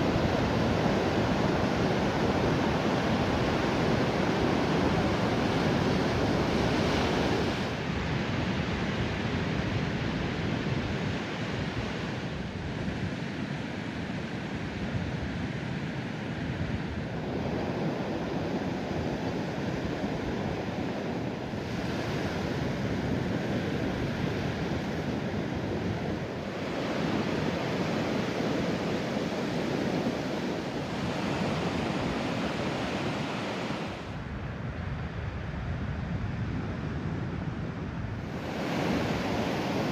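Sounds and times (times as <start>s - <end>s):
wind on microphone: 0.0s - 13.1s, 16.4s - 39.9s
ocean surf breaking: 26.4s - 34.2s, 38.3s - 39.9s.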